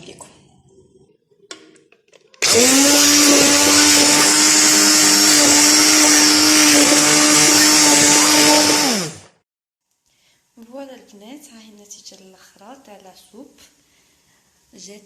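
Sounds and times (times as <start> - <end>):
immersion blender running: 2.4 - 9.4.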